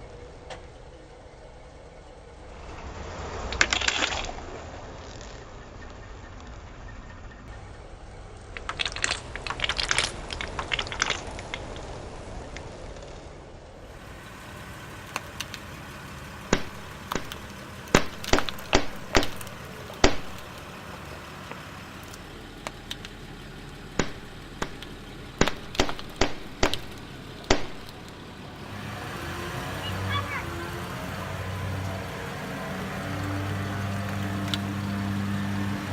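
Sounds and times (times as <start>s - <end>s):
sharp cracks and snaps: 3.5s - 5.4s, 8.4s - 13.2s, 14.9s - 23.2s, 23.9s - 28.3s, 33.0s - 35.7s
tyre crushing brittle objects: 3.6s - 4.4s, 8.6s - 12.0s, 16.5s - 20.8s, 24.0s - 28.2s.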